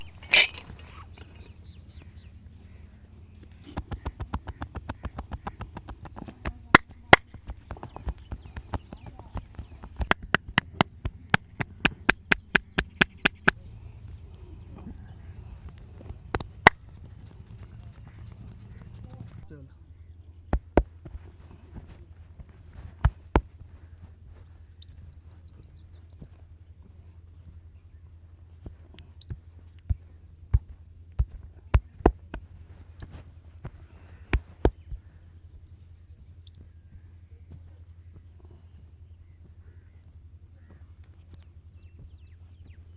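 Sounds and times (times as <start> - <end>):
hands slapping a head: 10.0 - 13.6
massage smacks: 10.0 - 13.6
small bird chirping: 24.0 - 25.9.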